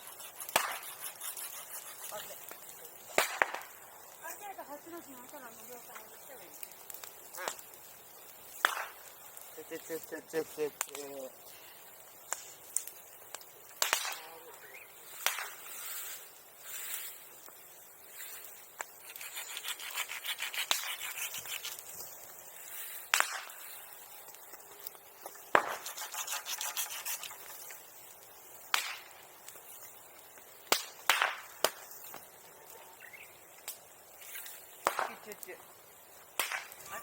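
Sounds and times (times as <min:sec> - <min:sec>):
hand saw rasping through wood: 0:00.0 - 0:02.2, 0:19.2 - 0:21.7, 0:25.8 - 0:27.4
burning wood crackling: 0:00.0 - 0:37.0.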